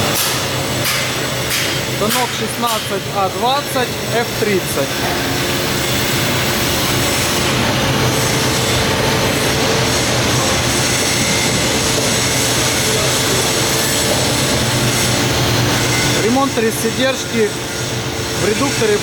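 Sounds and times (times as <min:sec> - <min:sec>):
lathe running: 0:00.0 - 0:19.0.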